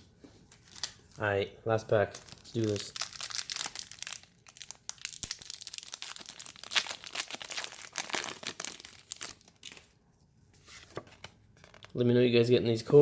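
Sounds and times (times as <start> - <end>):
foil wrapper crinkling: 2.1 - 9.9.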